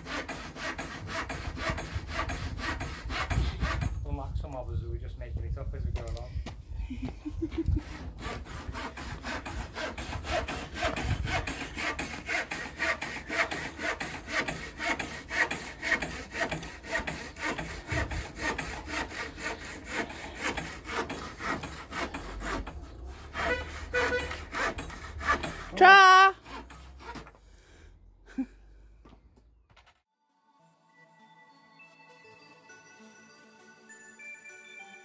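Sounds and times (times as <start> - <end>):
hand saw cutting wood: 0.0 - 4.0, 7.3 - 27.5.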